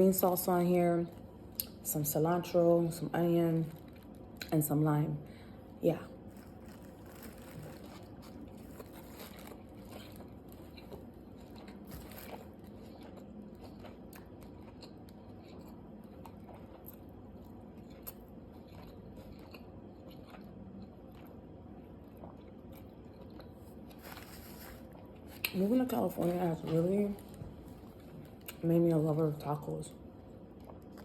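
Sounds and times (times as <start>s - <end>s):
person chewing taco: 3.7s - 4.5s, 6.2s - 25.6s, 27.2s - 28.6s, 30.2s - 31.0s.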